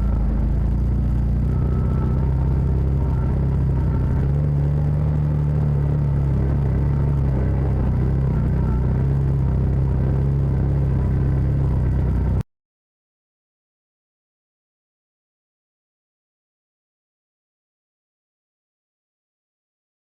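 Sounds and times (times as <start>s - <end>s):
utility vehicle engine droning: 0.0s - 12.5s.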